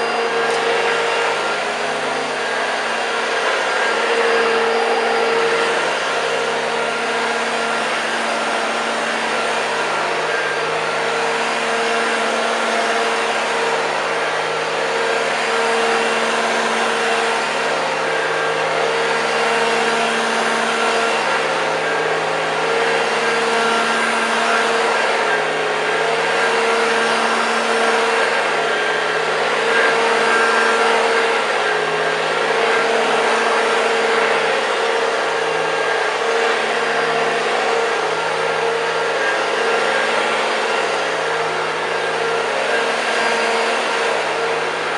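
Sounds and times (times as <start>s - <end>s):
upright vacuum cleaner running: 0.0s - 44.9s.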